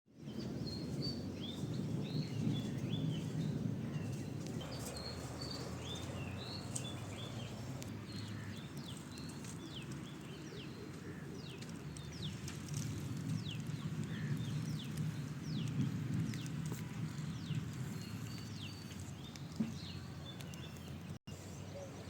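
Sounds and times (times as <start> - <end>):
birds chirping: 0.2 - 22.0.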